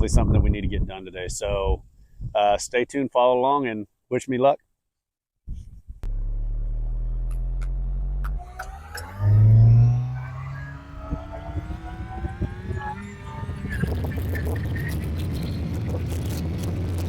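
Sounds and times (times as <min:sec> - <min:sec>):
loud low rumble: 0:06.0 - 0:17.0
skid steer engine revving: 0:06.0 - 0:17.0.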